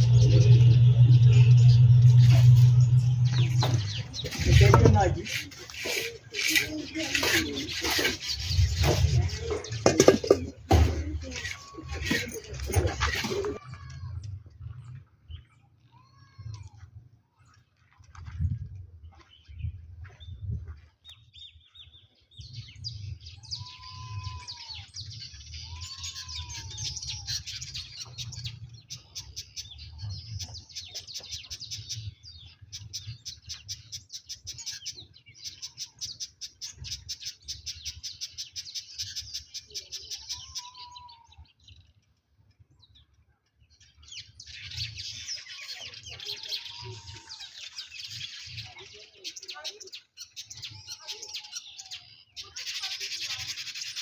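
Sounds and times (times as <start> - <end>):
low rumble: 0.0 - 5.2
small birds chattering and chirping: 0.0 - 16.8, 19.1 - 54.0.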